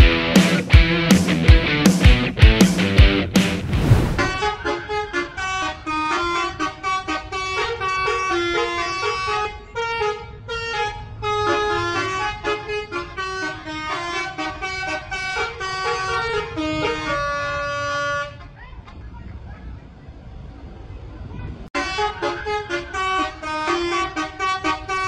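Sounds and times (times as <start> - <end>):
low rumble: 3.4 - 4.5
multi-tone bus air horn tune: 4.4 - 18.6, 21.8 - 25.0.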